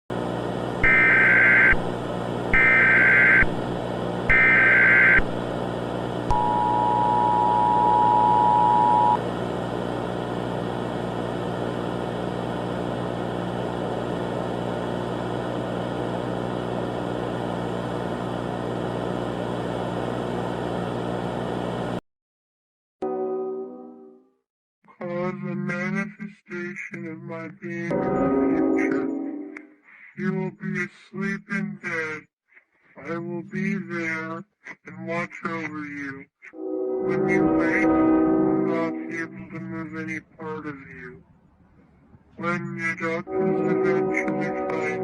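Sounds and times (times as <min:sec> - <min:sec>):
electrical hum with hiss: 0:00.1 - 0:22.0
two-tone attention signal: 0:06.3 - 0:09.2.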